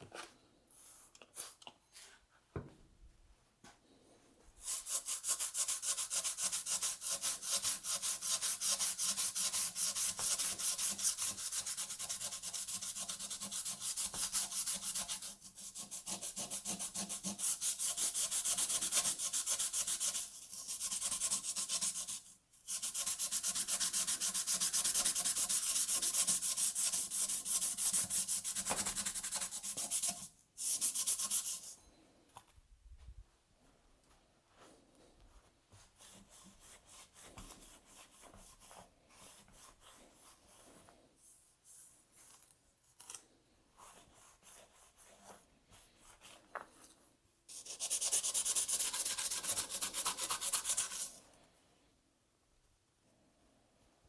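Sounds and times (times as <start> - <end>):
sandpaper scrubbing rusty metal: 4.6 - 31.7.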